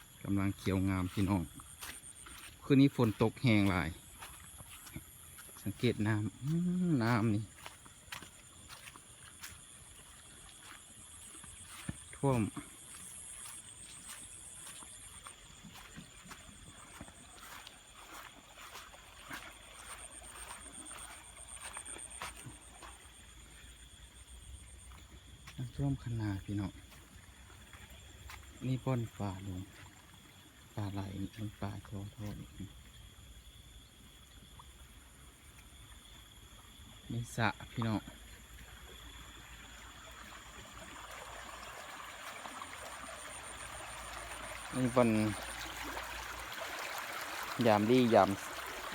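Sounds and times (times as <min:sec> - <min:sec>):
stream rushing: 0:00.0 - 0:23.2, 0:39.9 - 0:48.9
soft footsteps: 0:00.0 - 0:30.5.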